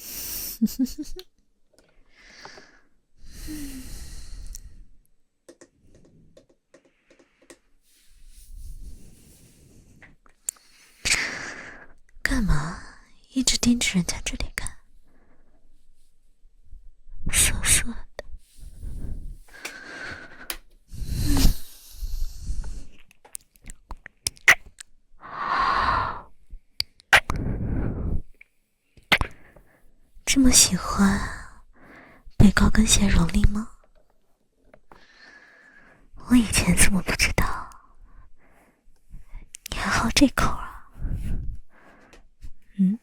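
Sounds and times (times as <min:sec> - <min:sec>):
woman breathing and sighing: 0:01.9 - 0:05.0, 0:18.5 - 0:23.0, 0:27.3 - 0:28.3, 0:40.7 - 0:43.0
breath drawn in: 0:07.8 - 0:11.9
breath blown onto microphone: 0:07.9 - 0:10.0, 0:18.5 - 0:20.3, 0:41.0 - 0:41.6
mouth clicks: 0:23.3 - 0:24.9, 0:26.8 - 0:27.5, 0:29.0 - 0:29.4.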